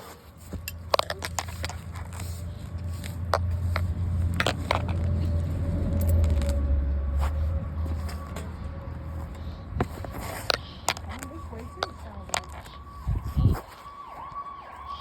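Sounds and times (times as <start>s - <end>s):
small clicks and scrapes: 0.0s - 6.6s, 9.2s - 13.1s
vehicle passing by: 0.3s - 13.6s.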